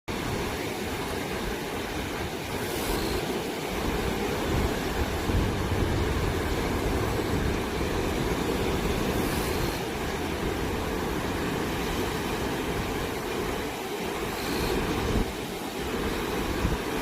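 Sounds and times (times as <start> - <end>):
surf rumbling: 0.1 - 17.0.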